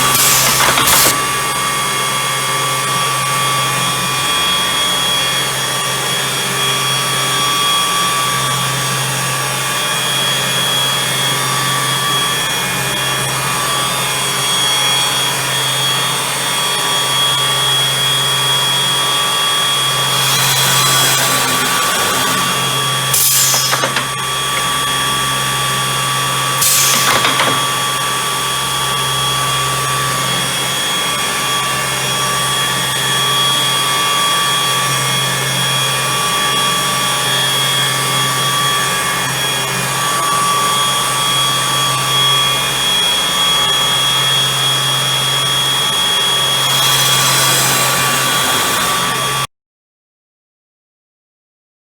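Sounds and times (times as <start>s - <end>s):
machine humming and whining: 0.0s - 2.0s, 18.0s - 28.2s, 44.6s - 49.5s.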